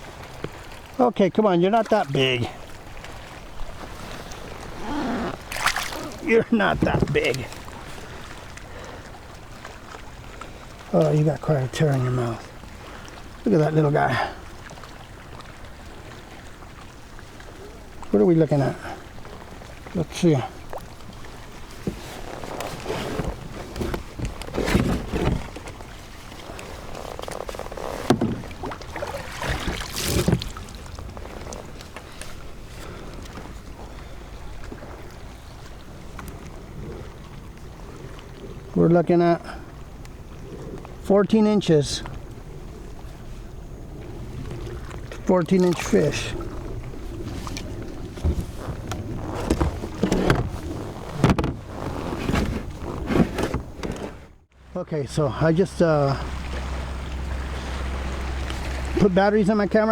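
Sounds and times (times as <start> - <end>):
knocks and rubbing of gear in kayak: 0.0 - 14.1, 14.7 - 54.5, 56.2 - 59.7
knocks and thumps on kayak: 3.7 - 8.4, 20.7 - 33.6, 44.3 - 54.4.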